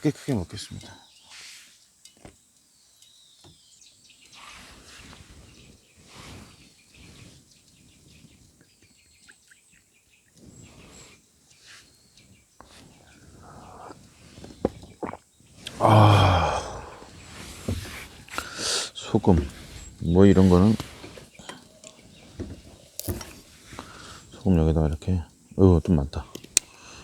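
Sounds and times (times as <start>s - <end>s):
faint birdsong: 0.0s - 27.0s
forest ambience: 0.0s - 27.0s
soft clicks and rustles: 0.6s - 15.8s.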